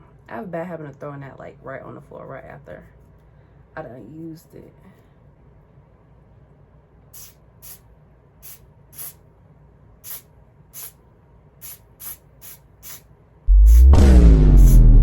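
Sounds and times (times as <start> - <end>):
spray bottle hissing bursts: 7.2 - 7.8, 8.4 - 9.2, 10.0 - 10.2, 10.8 - 11.0, 11.6 - 13.0, 14.6 - 14.8.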